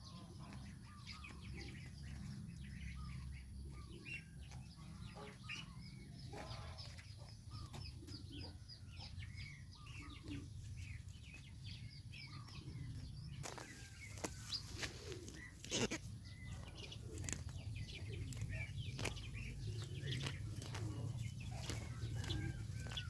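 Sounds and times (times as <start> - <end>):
goslings peeping: 0.1 - 23.0
steady low rumble: 17.4 - 23.0.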